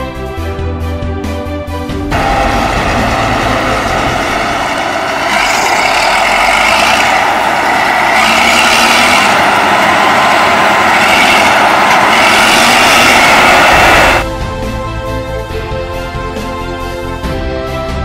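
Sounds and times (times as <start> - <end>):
harvest machinery running: 2.1 - 14.3.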